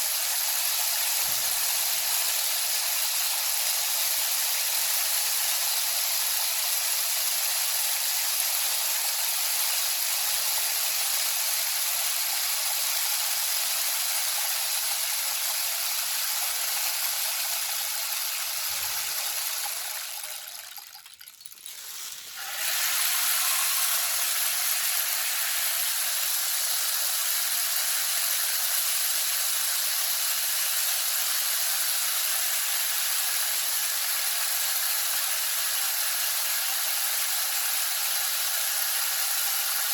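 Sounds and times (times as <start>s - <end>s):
rainstick pellets pattering: 18.3s - 26.6s.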